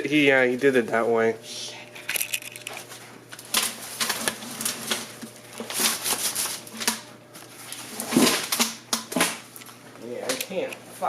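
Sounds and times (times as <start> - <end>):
objects clattering and knocking: 2.0 - 7.0, 7.8 - 9.4.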